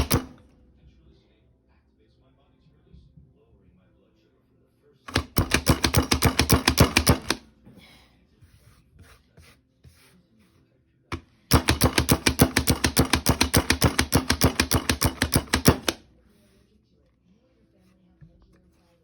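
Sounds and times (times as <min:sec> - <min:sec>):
hand chopper chopping herbs: 0:00.0 - 0:00.4, 0:05.1 - 0:07.4, 0:11.5 - 0:16.0.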